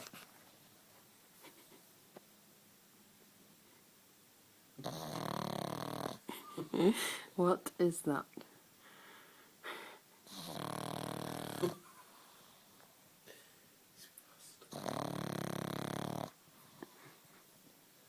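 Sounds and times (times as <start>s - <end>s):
dog snoring: 4.8s - 6.4s, 10.2s - 11.8s, 14.7s - 16.4s
quiet breathing: 8.4s - 10.6s, 11.9s - 14.8s, 16.3s - 17.6s.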